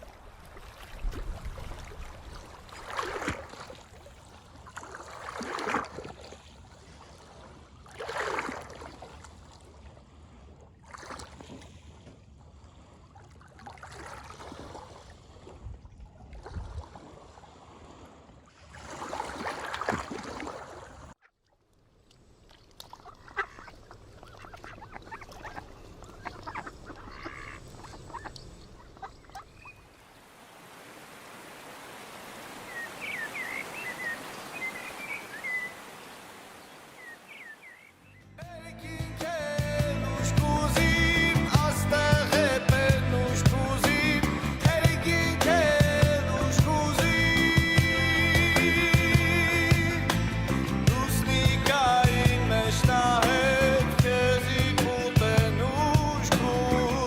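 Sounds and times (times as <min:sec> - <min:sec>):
outdoor background noise: 0:00.0 - 0:38.6
waterfowl honking: 0:23.0 - 0:29.9, 0:32.6 - 0:38.2
faint chirps and clicks: 0:24.3 - 0:29.8.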